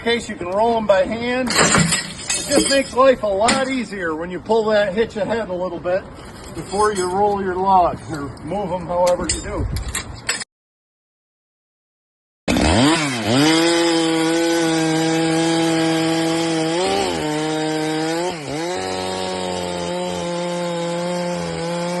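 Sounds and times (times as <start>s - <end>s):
chainsaw cutting wood: 12.5s - 22.0s.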